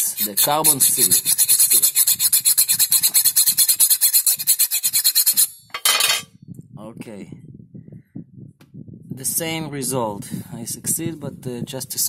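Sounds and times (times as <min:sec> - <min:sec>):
tool scraping steel screw: 0:00.0 - 0:06.2.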